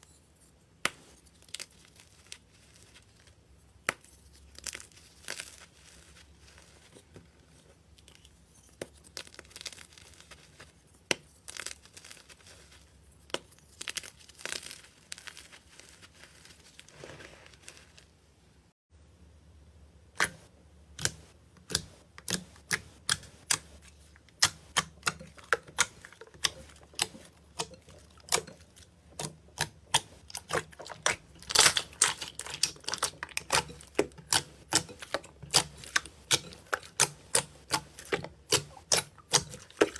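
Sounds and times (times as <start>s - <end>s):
slime squished with sticky pops: 21.0s - 39.9s.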